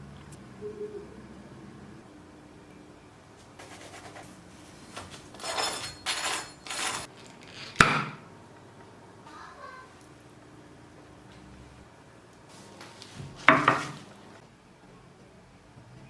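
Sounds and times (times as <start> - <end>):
dish or utensil clink: 4.9 - 7.1.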